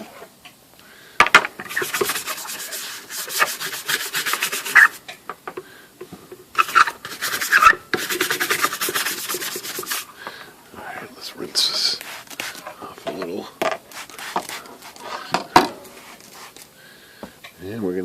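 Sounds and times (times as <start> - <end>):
brush scrubbing hard: 1.6 - 5.0, 6.6 - 10.2, 11.3 - 16.7.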